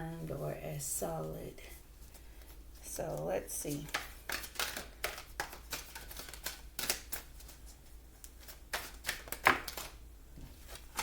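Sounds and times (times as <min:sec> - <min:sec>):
cards tapping and slapping on table: 0:03.8 - 0:07.5, 0:08.2 - 0:11.0.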